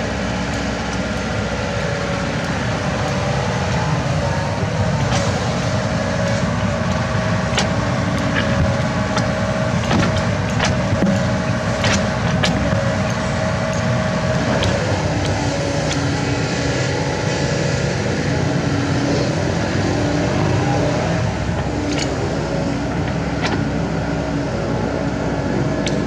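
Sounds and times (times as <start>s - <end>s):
excavator diesel engine running: 0.0s - 26.0s
hydraulic whine: 0.0s - 26.0s
sharp knocks: 7.5s - 13.1s.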